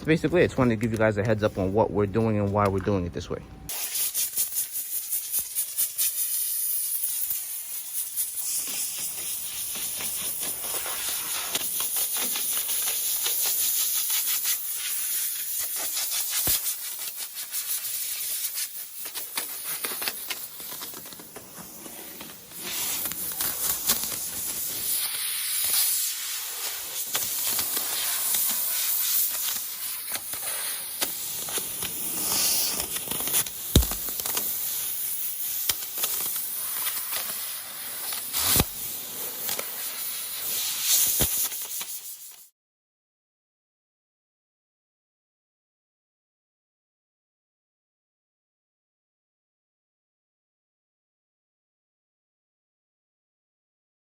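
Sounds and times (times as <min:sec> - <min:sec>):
compressed air hiss: 0:03.7 - 0:42.5.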